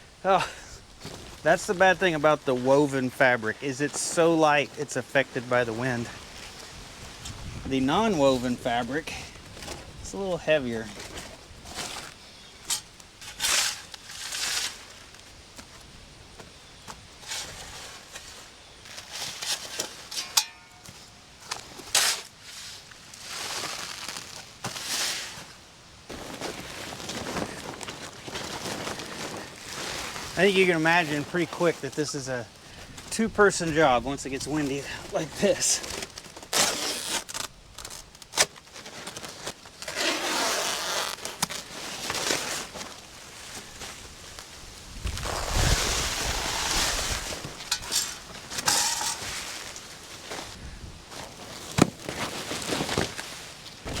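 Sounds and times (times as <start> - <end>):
gusty wind: 6.7 - 8.2, 44.6 - 47.7
fabric rustling and crackling: 26.1 - 31.6, 35.5 - 54.0.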